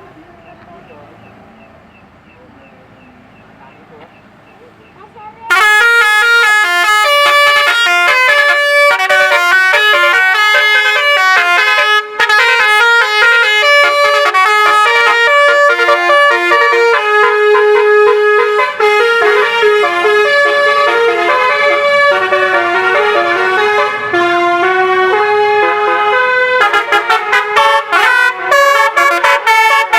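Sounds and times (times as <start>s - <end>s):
multi-tone bus horn tune: 5.0s - 29.9s.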